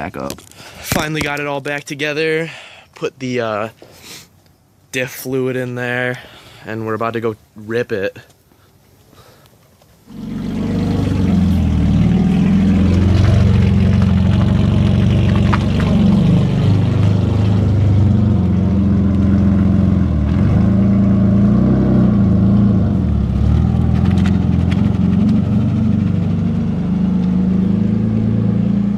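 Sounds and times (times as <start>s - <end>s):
car engine revving: 10.1s - 28.9s.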